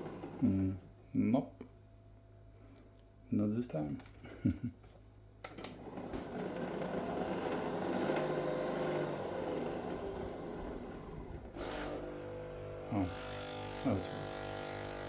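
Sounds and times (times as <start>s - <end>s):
coffee machine whirring: 0.0s - 0.8s, 5.6s - 15.0s.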